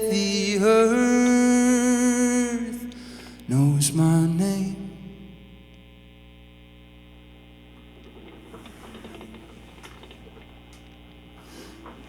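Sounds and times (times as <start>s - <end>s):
low hum: 0.0s - 12.0s
faint clicks: 7.7s - 12.0s
soft rustles: 7.8s - 12.0s.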